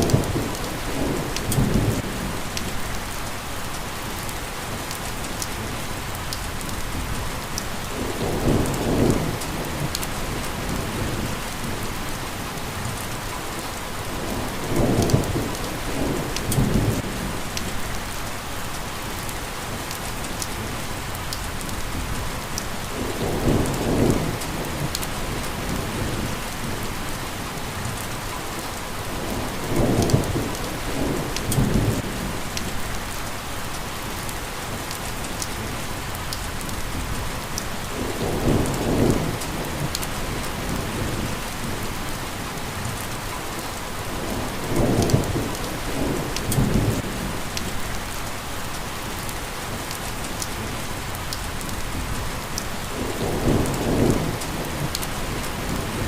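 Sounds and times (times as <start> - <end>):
thunder rumbling: 0.0 - 3.1, 6.8 - 13.0, 14.1 - 18.1, 21.8 - 28.0, 29.0 - 33.0, 36.8 - 43.0, 44.0 - 48.2, 51.5 - 56.0
rain hissing: 0.0 - 56.0
raindrops ticking: 42.9 - 56.0.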